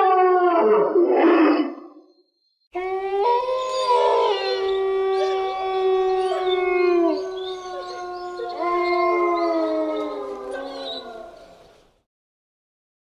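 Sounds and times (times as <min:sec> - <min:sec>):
wolf-like creature howling: 0:00.0 - 0:01.8, 0:02.8 - 0:11.6.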